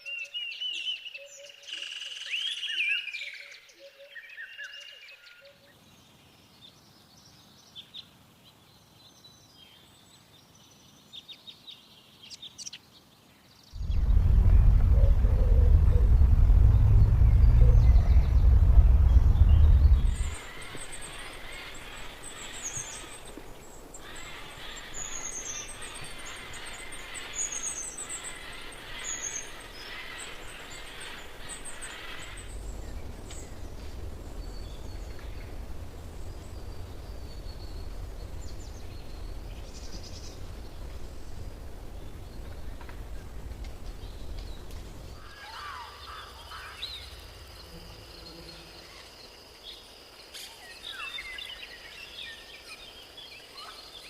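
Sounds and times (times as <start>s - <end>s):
low rumble: 13.8s - 24.6s, 25.2s - 45.2s
steady high buzz: 13.8s - 27.2s
lower bird calls: 13.8s - 49.2s.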